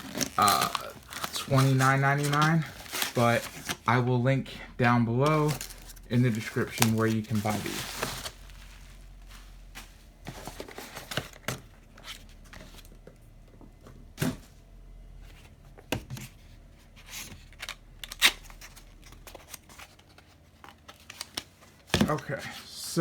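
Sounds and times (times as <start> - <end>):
packaging clicks and knocks: 0.0 - 3.8, 5.2 - 8.4
packaging rustling: 0.0 - 4.1, 5.2 - 12.9.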